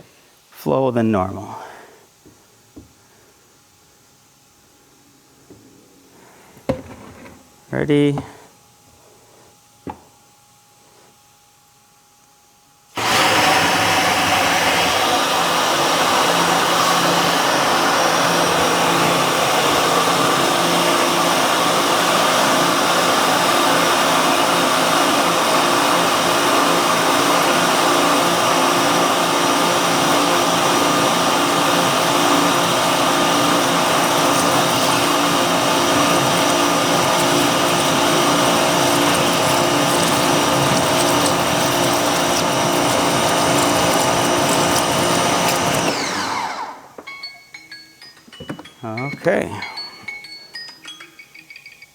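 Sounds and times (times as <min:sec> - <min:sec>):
pressure washers humming: 0:13.0 - 0:47.0.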